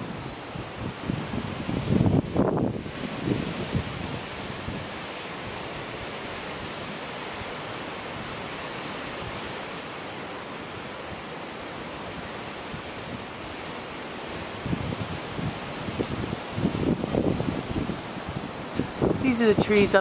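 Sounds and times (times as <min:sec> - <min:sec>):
strong wind through trees: 0:00.0 - 0:20.0.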